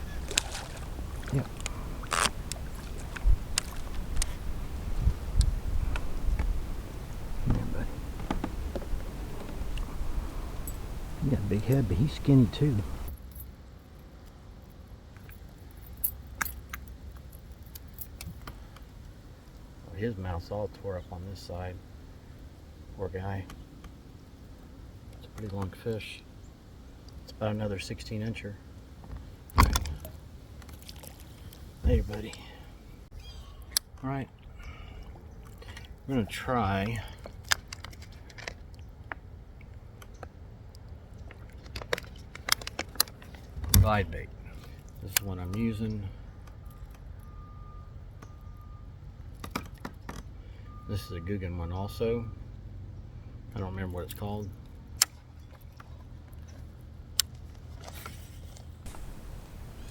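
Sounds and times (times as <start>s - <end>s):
steady low rumble: 0.0s - 13.4s, 58.9s - 59.9s
low steady rumble: 0.0s - 37.2s, 42.9s - 49.4s, 50.3s - 59.9s
light handling clicks and taps: 25.1s - 25.8s.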